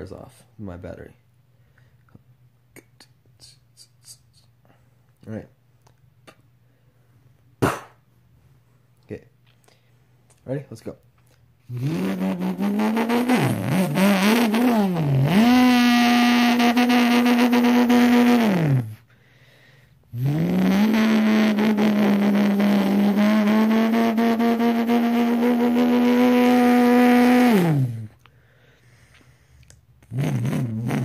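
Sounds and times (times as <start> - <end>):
man imitating car engine: 11.7 - 19.0, 20.1 - 28.1, 30.0 - 31.0.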